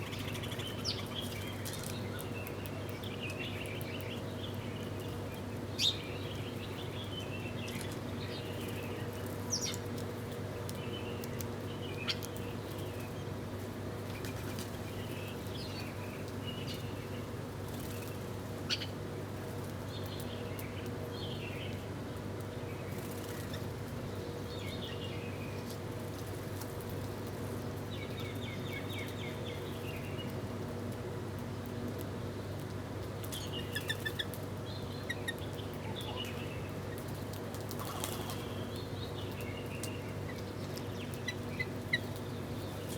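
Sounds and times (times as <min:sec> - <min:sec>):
small birds chirping: 0:00.0 - 0:13.3, 0:14.0 - 0:19.0, 0:33.2 - 0:42.9.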